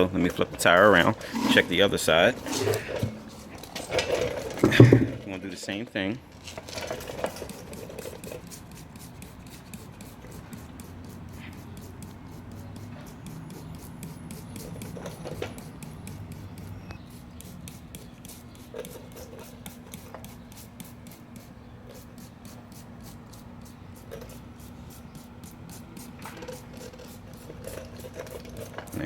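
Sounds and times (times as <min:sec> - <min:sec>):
spray bottle squirting: 0:06.7 - 0:29.0
low steady hum: 0:07.4 - 0:18.8.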